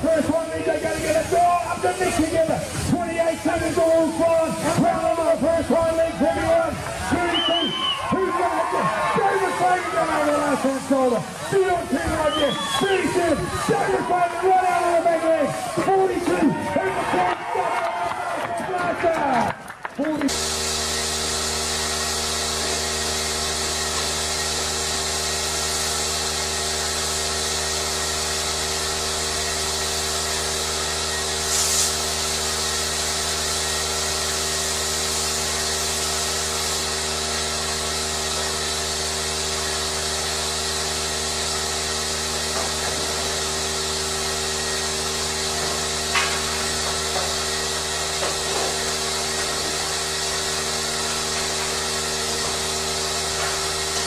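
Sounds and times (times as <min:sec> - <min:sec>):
machine humming and hissing: 0:00.0 - 0:17.7, 0:20.2 - 0:54.0
bright scrape: 0:31.5 - 0:32.0.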